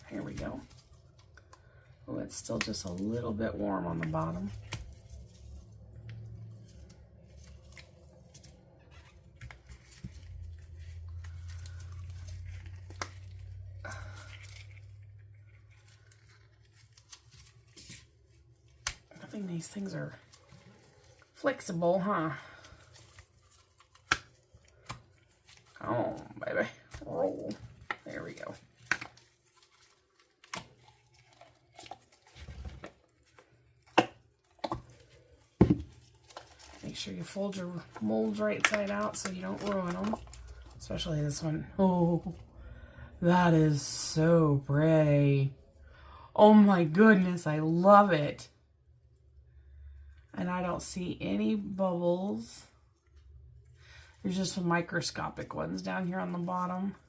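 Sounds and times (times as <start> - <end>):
low steady hum: 0.0 - 57.0
silicone mold rustling: 26.7 - 41.4.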